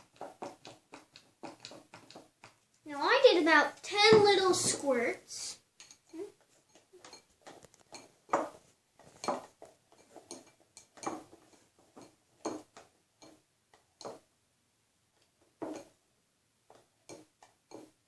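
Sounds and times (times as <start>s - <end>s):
utensil scraping mixing bowl: 0.0s - 12.8s.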